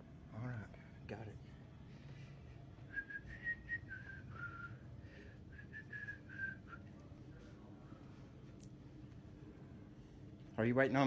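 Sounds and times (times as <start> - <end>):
faint low hum: 0.0 - 11.0
person whistling a tune: 2.9 - 4.9, 5.5 - 6.9.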